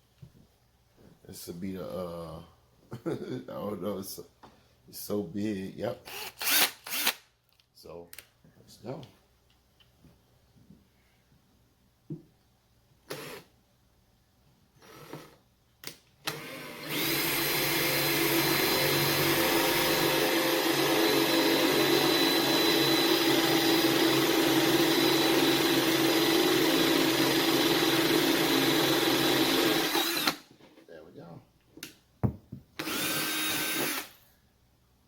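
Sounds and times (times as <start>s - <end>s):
handling knocks: 32.2s - 32.8s.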